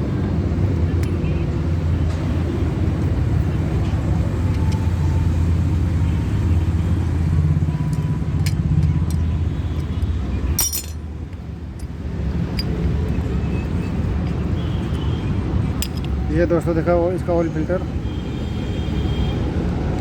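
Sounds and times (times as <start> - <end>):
vehicle engine hum: 0.0 - 20.0
metallic clatter: 10.6 - 11.0.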